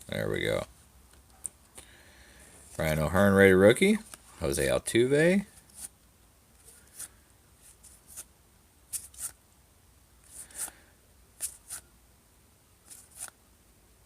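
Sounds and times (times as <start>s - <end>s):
trading cards swishing: 6.6s - 8.3s, 8.9s - 9.4s, 10.2s - 10.8s, 11.4s - 11.9s, 12.8s - 13.4s.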